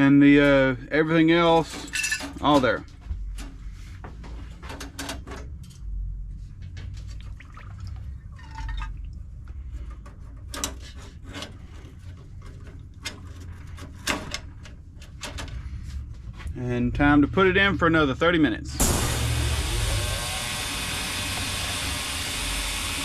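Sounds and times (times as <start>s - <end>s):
low steady hum: 0.0s - 23.0s
metal parts clinking: 1.6s - 2.8s
cleaning liquid sloshing: 7.0s - 9.5s.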